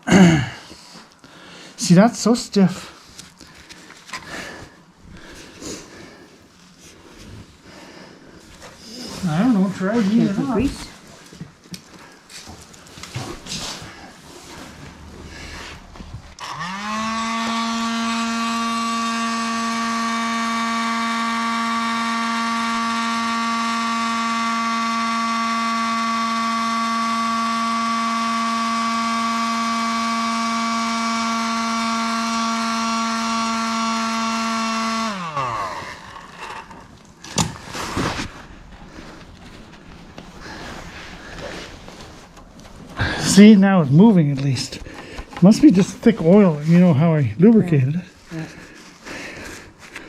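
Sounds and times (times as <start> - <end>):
hot-air blower whining: 3.7 - 50.0.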